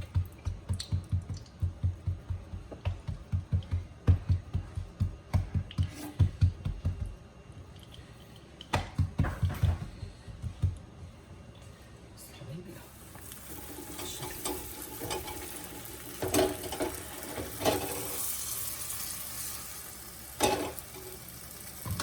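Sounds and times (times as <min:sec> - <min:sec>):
hands patting dough: 0:00.0 - 0:07.2, 0:08.6 - 0:10.8.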